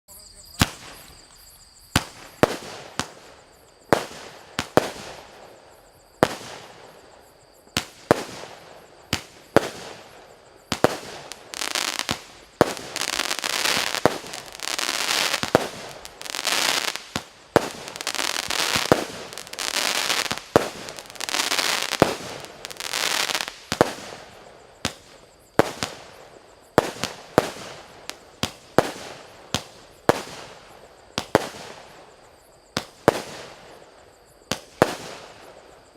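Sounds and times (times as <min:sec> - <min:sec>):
firework bangs: 0:07.8 - 0:32.0
firework hissing: 0:08.0 - 0:24.3.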